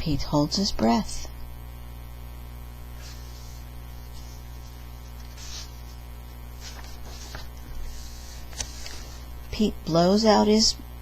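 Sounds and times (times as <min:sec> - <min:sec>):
electrical mains hum: 0:00.0 - 0:11.0
faint rustles: 0:02.9 - 0:09.4.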